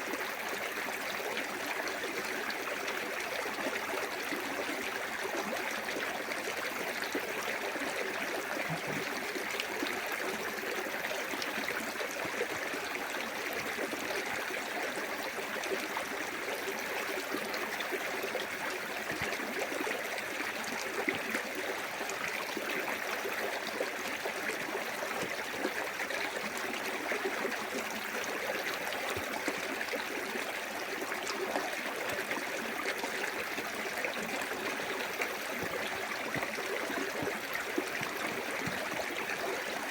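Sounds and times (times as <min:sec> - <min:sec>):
water splashing over rocks: 0:08.6 - 0:09.4.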